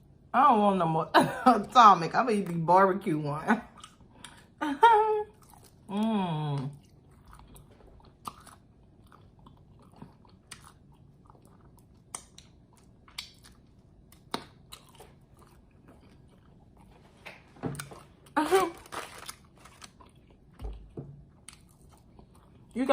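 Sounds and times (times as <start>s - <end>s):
wet chewing and biting: 3.7s - 4.5s, 5.3s - 5.9s, 6.7s - 22.8s.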